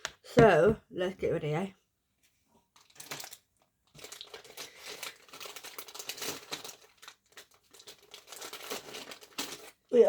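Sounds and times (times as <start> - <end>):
packaging crinkling and rustling: 2.8 - 10.0.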